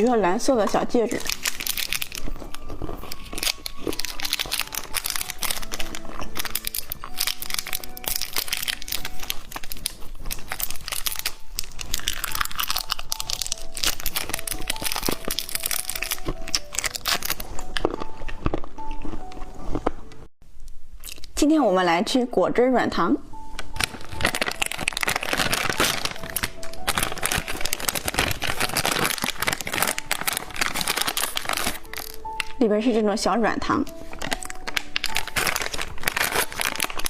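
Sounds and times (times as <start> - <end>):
plastic packaging crinkling: 0.0 - 20.1, 23.4 - 32.6, 33.8 - 37.0
soft background music: 0.0 - 37.0.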